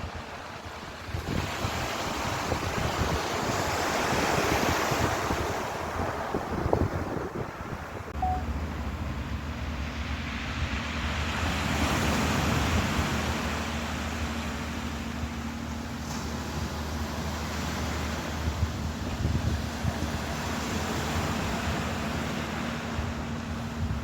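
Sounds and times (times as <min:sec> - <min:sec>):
ocean surf washing in: 0:00.0 - 0:24.0
wind buffeting microphone: 0:00.0 - 0:24.0
low steady hum: 0:08.2 - 0:24.0.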